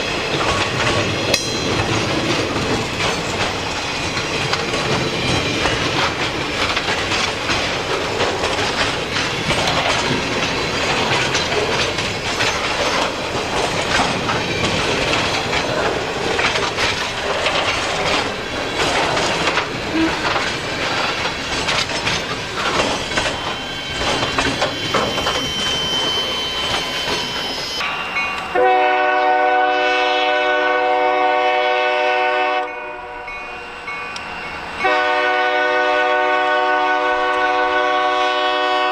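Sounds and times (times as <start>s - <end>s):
train wheels clattering on rails: 0.0s - 30.5s
locomotive horn chord: 28.5s - 33.3s, 34.8s - 38.9s.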